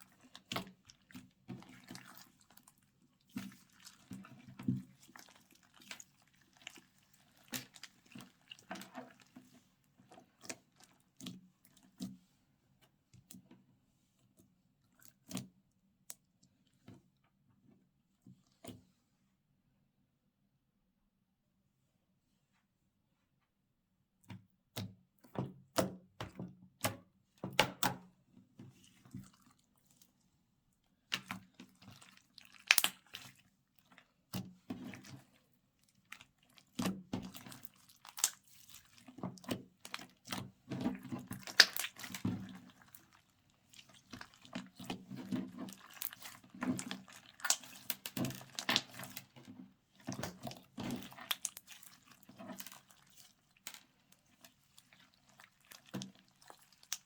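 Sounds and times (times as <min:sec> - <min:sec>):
slime squishing by hand: 0:00.0 - 0:12.0, 0:31.0 - 0:57.0.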